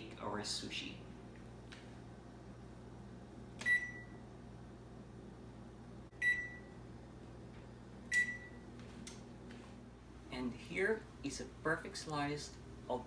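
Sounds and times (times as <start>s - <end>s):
oven control panel beeping: 3.6s - 4.2s, 6.2s - 6.8s, 8.1s - 8.7s.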